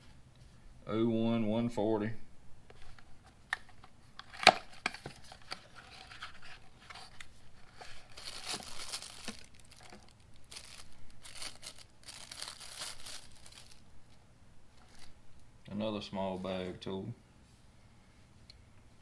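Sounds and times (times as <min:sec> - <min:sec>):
packaging crinkling and tearing: 0:03.6 - 0:14.2, 0:14.8 - 0:15.5.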